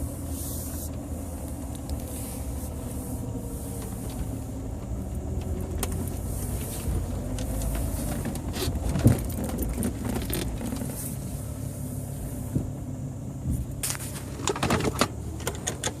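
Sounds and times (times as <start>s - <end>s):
car engine running: 0.0s - 16.0s
road noise: 0.0s - 16.0s
sharp rattling clicks: 14.3s - 16.0s.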